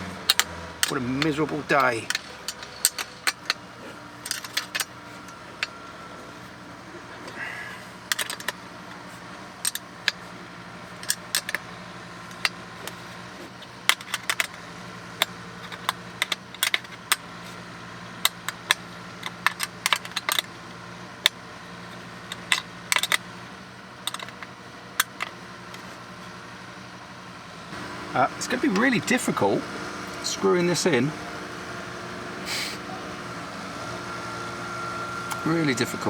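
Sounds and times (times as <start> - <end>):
metallic clicks and clinks: 0.0 - 6.2, 7.2 - 10.3, 10.9 - 11.7, 12.3 - 14.6, 15.2 - 17.3, 18.2 - 20.6, 21.2 - 23.2, 24.1 - 25.9.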